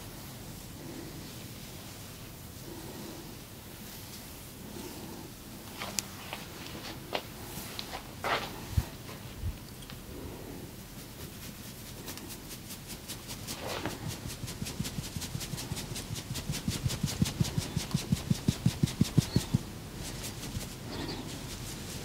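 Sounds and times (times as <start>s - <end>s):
hands striking body rhythmically: 14.2s - 19.8s.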